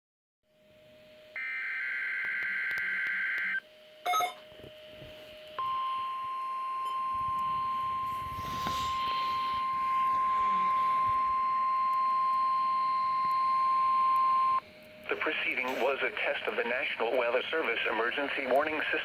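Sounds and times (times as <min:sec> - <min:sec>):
single-pitch warning alarm tone: 0:01.2 - 0:14.8
warbling digital data tones: 0:07.1 - 0:14.6.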